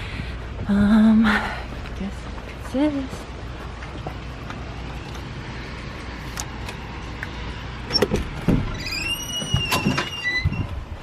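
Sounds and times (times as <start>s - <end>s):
steady low hum: 0.0s - 8.8s
high-pitched squeak: 8.7s - 10.8s.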